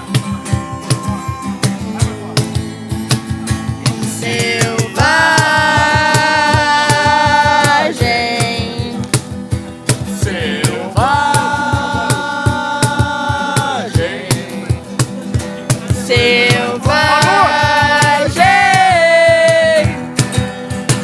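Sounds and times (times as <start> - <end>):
acoustic guitar strumming: 0.0 - 21.0
voices singing long notes: 4.1 - 8.8, 10.2 - 14.7, 16.0 - 19.9.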